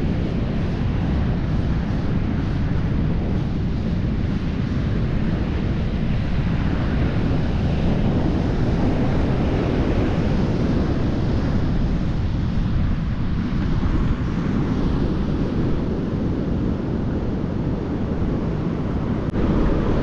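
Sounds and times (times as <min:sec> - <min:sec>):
wind buffeting microphone: 0:00.0 - 0:20.0
ocean surf: 0:06.2 - 0:20.0.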